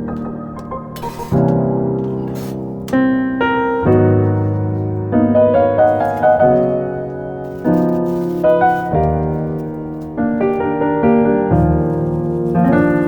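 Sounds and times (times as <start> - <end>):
slow piano chords: 0.0 - 13.0.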